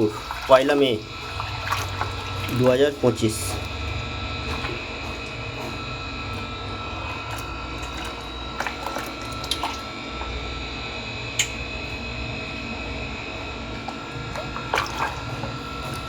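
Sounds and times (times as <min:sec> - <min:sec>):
water drips and splashes: 0:00.0 - 0:10.4, 0:13.8 - 0:16.0
faint water sounds: 0:00.0 - 0:16.0
steady low hum: 0:00.0 - 0:16.0.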